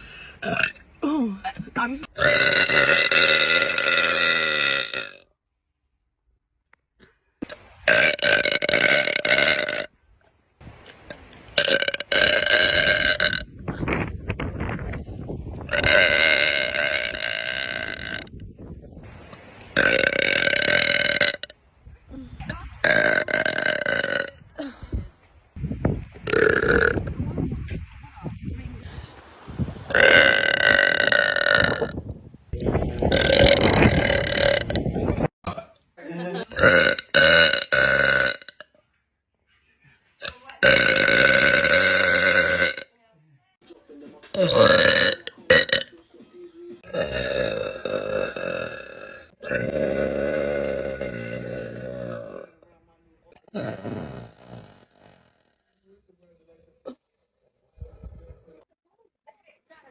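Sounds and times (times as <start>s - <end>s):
woman belching loudly: 0.4s - 5.3s, 7.4s - 9.9s, 11.6s - 13.5s, 15.7s - 18.4s, 19.8s - 21.6s, 22.5s - 24.8s, 26.2s - 27.1s, 29.9s - 32.0s, 33.1s - 34.9s, 36.5s - 38.7s, 40.2s - 42.9s, 44.4s - 45.9s, 46.8s - 52.5s, 53.4s - 55.6s
woman burping: 0.4s - 5.3s, 7.4s - 9.9s, 11.6s - 13.8s, 15.7s - 18.4s, 19.8s - 25.0s, 26.2s - 27.1s, 29.9s - 32.0s, 33.1s - 34.9s, 35.5s - 35.8s, 36.4s - 38.7s, 40.2s - 42.9s, 44.4s - 45.9s, 46.8s - 52.5s, 53.4s - 55.6s.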